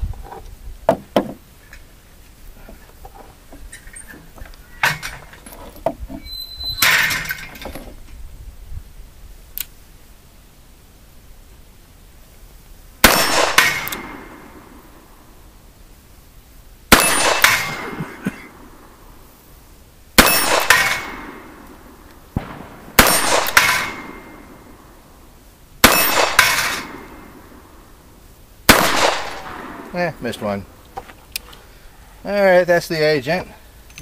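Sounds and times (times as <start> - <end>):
steel plate target clanging: 4.8 - 7.9, 16.9 - 18.0, 20.2 - 21.5, 22.4 - 24.6, 25.8 - 27.2.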